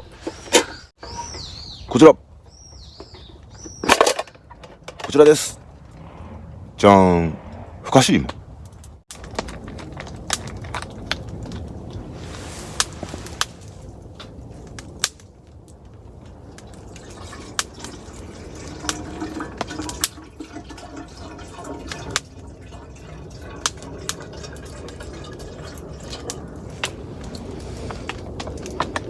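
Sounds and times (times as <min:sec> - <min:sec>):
water dripping: 0:08.6 - 0:29.0
rain hissing: 0:11.0 - 0:29.0.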